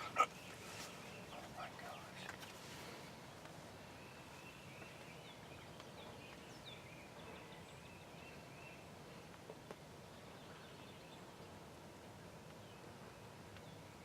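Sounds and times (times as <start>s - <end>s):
wild turkey yelping: 0.0s - 0.3s.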